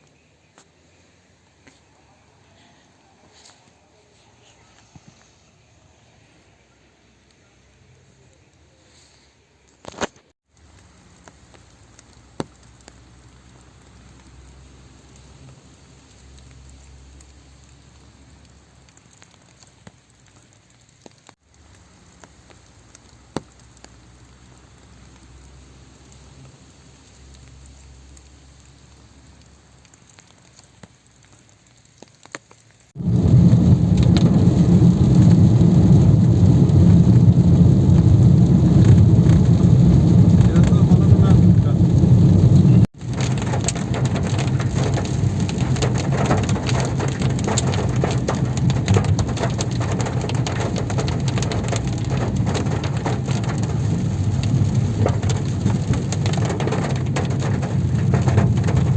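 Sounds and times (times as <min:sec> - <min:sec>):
rain pattering: 0:00.0 - 0:58.9
heavy rain rushing: 0:32.9 - 0:58.9.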